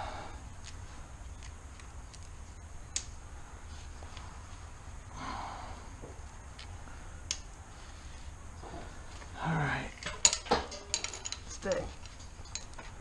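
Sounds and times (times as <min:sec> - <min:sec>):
person breathing: 0:00.0 - 0:00.5, 0:05.1 - 0:06.1
sharp light clicks: 0:02.9 - 0:03.2.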